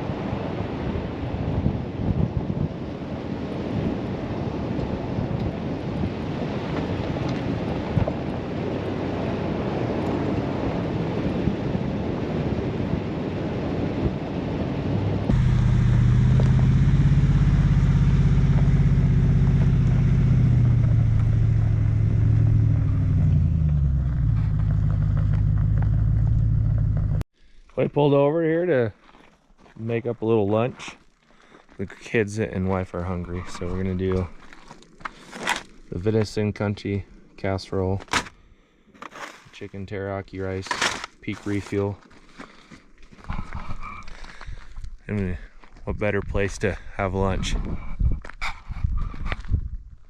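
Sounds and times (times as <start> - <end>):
rushing wind and road noise: 0.0 - 27.2, 43.3 - 50.0
truck engine hum: 15.0 - 27.3.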